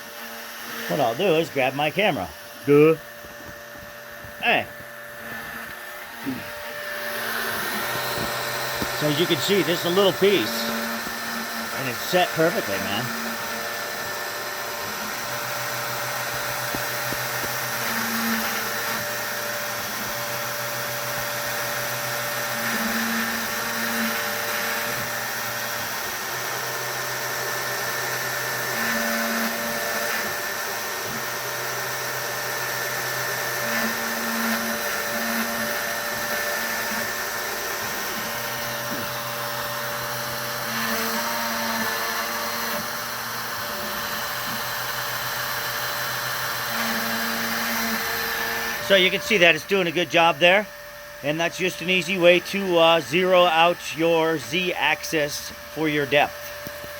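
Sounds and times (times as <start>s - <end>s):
router spindle high whine: 0.0s - 56.9s
machine axes low hum: 2.2s - 11.8s.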